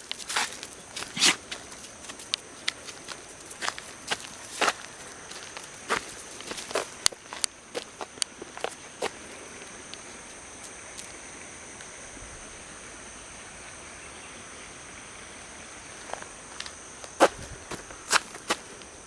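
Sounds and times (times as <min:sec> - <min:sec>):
footsteps on ground: 0:00.0 - 0:11.1, 0:16.0 - 0:19.0
insects trilling: 0:00.0 - 0:19.0.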